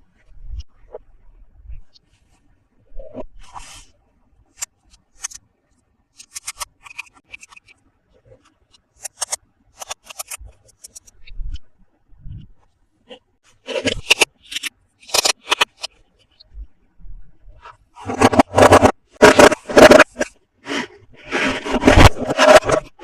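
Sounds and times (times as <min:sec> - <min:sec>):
plastic toy parts clicking: 0:06.2 - 0:07.8, 0:09.0 - 0:11.2, 0:13.7 - 0:15.9.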